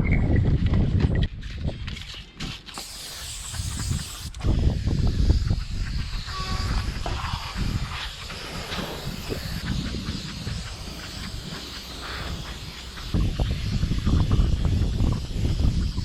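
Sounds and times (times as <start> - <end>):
spray paint can hissing: 2.0 - 16.0
heavy low rumble: 4.4 - 15.9.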